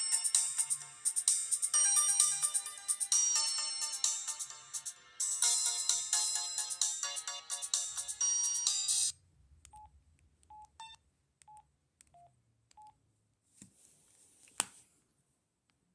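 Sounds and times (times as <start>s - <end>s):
polyphonic ringtone melody: 0.0s - 9.1s
phone keypad beeps: 10.5s - 13.0s.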